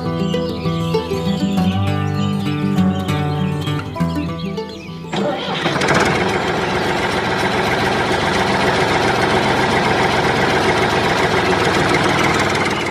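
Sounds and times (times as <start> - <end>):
motor running with fast pulse: 5.2 - 12.9.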